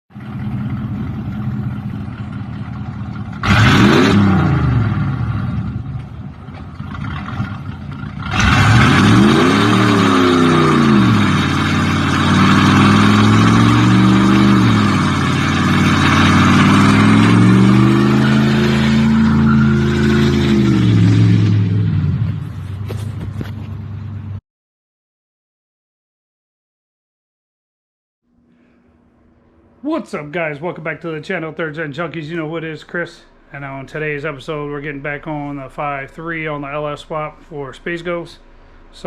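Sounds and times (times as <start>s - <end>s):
car engine revving: 0.1s - 24.2s.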